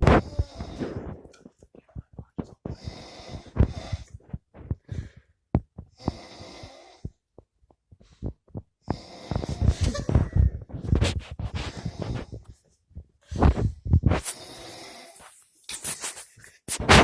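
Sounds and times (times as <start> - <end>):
man snoring: 0.0 - 1.3, 2.6 - 4.2, 5.9 - 7.2, 8.8 - 9.7, 14.2 - 15.4.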